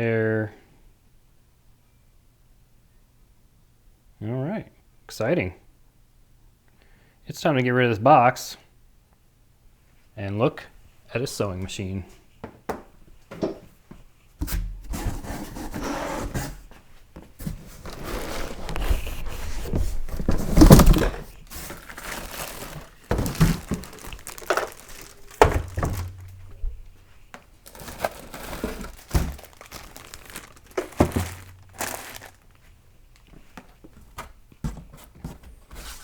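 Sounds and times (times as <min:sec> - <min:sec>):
packaging rustling and crinkling: 0:17.4 - 0:33.9
objects thunking down: 0:19.5 - 0:27.0, 0:27.7 - 0:32.5.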